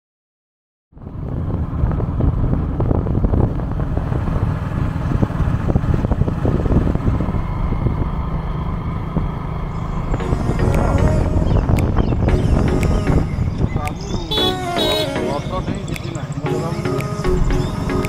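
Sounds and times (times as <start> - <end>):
moving vehicle noise: 0.9 - 18.0
wind buffeting microphone: 1.0 - 14.4.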